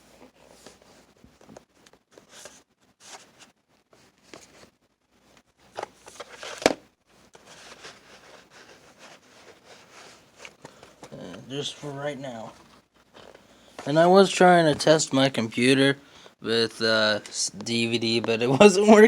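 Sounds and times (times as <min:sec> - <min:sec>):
plastic disks clicking and rustling: 0:05.3 - 0:11.5.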